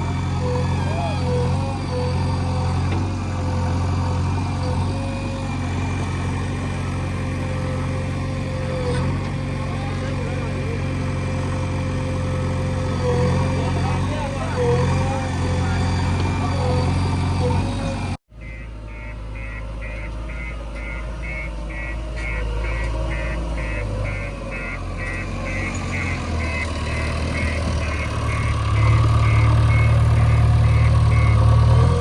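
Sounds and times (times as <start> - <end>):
heavy diesel engine running: 0.0 - 32.0
reversing alarm beeping: 18.4 - 32.0.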